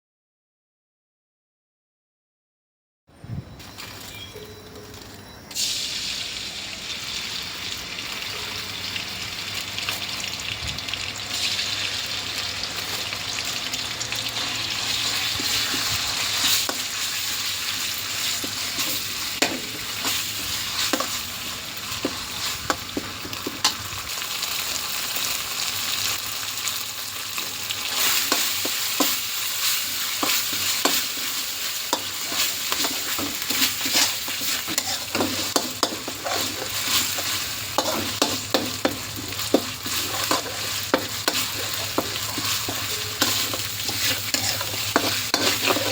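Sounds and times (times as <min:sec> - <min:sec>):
food sizzling in hot oil: 0:05.5 - 0:45.9
utensil scraping a pan: 0:29.7 - 0:45.9.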